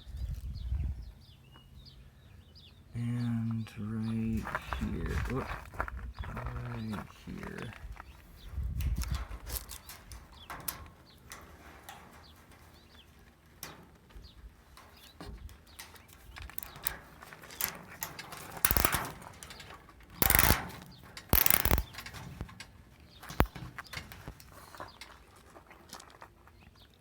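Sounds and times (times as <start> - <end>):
wire mesh clicks and rustles: 5.0 - 26.7
wire mesh rasping: 14.9 - 22.5, 23.3 - 24.5
sharp click: 18.6 - 19.1, 20.2 - 20.7, 21.3 - 22.1, 23.3 - 23.6.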